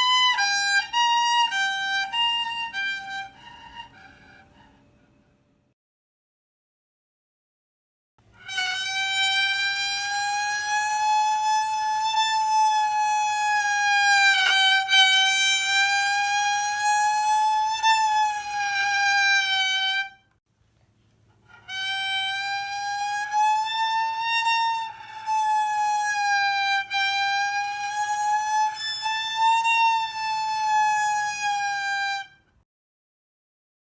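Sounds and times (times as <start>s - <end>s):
violin imitating siren: 0.0s - 4.7s, 8.5s - 20.1s, 21.6s - 32.3s.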